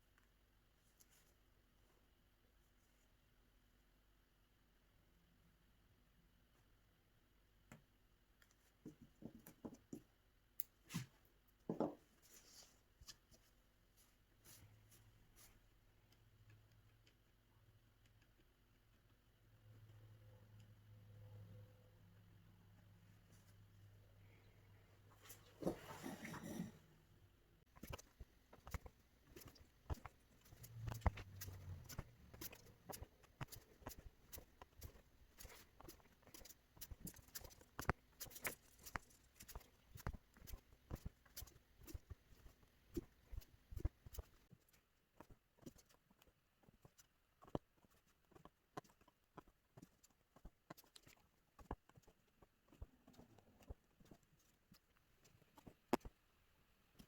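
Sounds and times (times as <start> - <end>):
needle tapping through fabric: 27.7 - 56.3.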